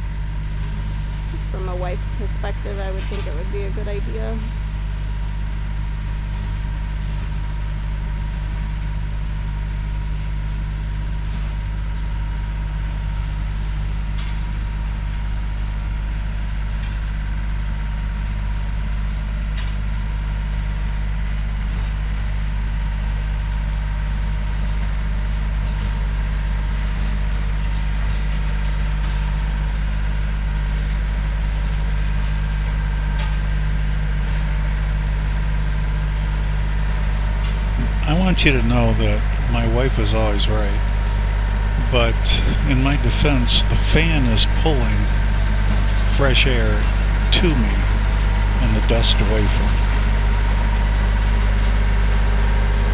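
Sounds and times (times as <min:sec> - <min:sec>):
tractor engine running: 0:00.0 - 0:11.9, 0:26.0 - 0:52.9.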